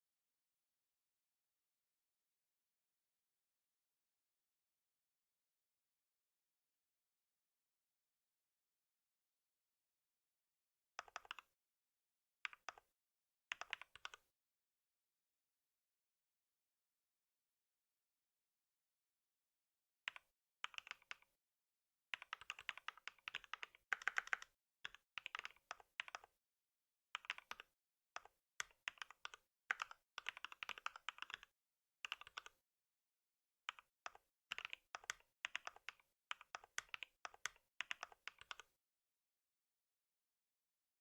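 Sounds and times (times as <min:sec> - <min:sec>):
typing on computer keyboard: 0:11.0 - 0:11.5, 0:13.5 - 0:14.2, 0:20.1 - 0:21.3, 0:22.2 - 0:26.3, 0:27.2 - 0:31.5, 0:32.1 - 0:32.6, 0:33.7 - 0:38.7.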